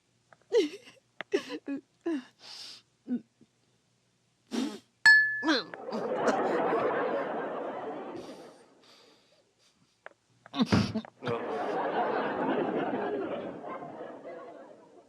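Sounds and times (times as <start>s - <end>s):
sharp metallic ping: 5.1s - 5.6s
studio audience laughing: 5.8s - 8.8s, 11.2s - 15.0s.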